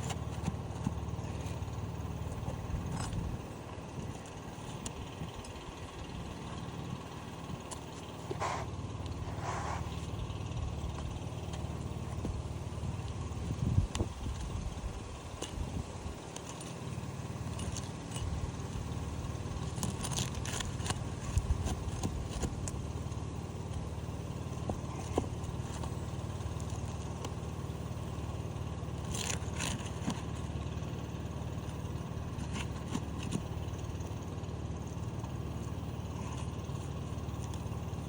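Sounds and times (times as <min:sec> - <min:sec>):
steady low rumble: 0:00.0 - 0:16.2
shingles clicking and scraping: 0:13.9 - 0:38.0.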